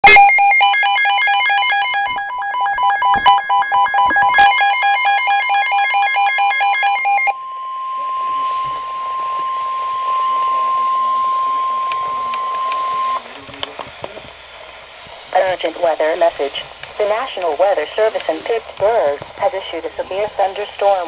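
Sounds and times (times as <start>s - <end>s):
warbling electronic alert tone: 0.0s - 13.2s
steady alarm tone: 0.0s - 13.3s.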